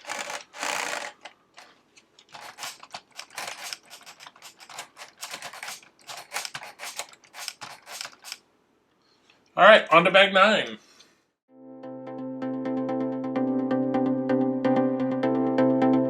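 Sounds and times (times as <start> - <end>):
plastic mechanism clicking: 0.0 - 8.4.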